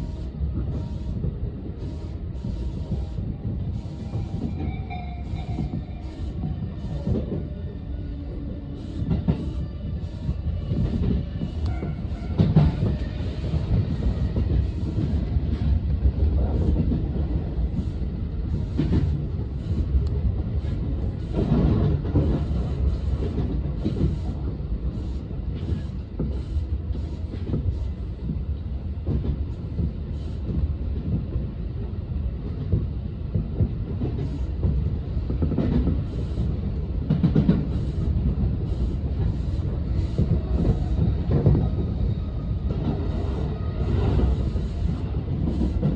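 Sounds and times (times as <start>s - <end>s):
train rumble: 0.0s - 45.9s
wheels clacking on rail joints: 8.9s - 18.0s.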